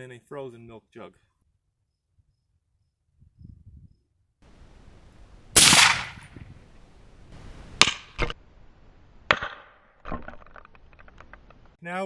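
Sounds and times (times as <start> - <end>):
sharp cracks: 5.6 - 6.5, 7.8 - 8.4, 9.3 - 11.8
suppressed rifle shot: 5.6 - 6.5.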